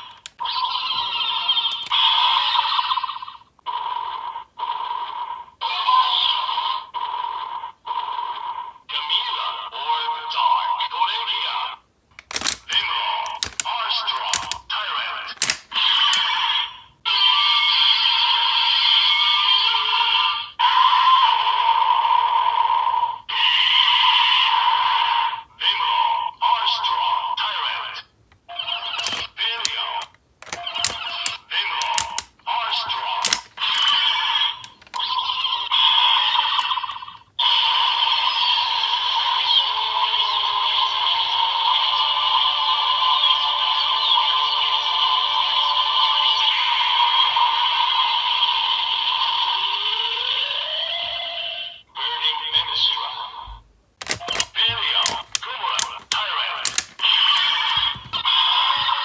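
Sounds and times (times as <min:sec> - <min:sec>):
tinny electronic toy voice: 0:00.0 - 0:22.2, 0:23.2 - 0:59.0
plastic clicks of toy medals: 0:12.2 - 0:14.7, 0:15.4 - 0:16.4, 0:29.0 - 0:32.4, 0:33.2 - 0:35.1, 0:54.0 - 0:57.8.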